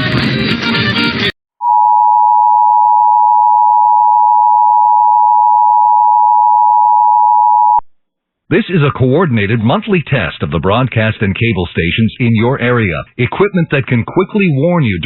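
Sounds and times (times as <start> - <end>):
music: 0.0 - 1.3.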